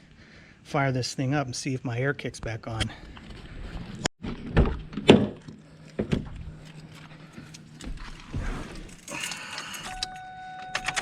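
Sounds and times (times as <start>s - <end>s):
footsteps: 6.0s - 9.1s.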